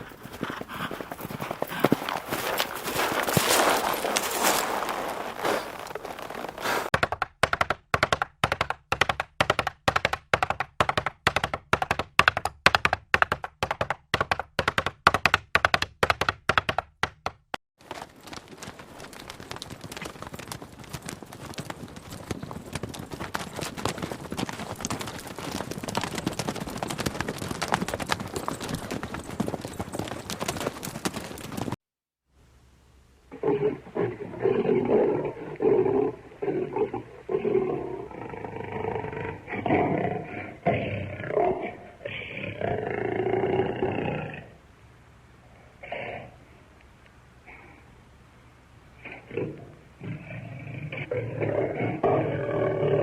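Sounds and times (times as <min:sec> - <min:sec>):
crackling patter of clicks: 0:17.8 - 0:31.8.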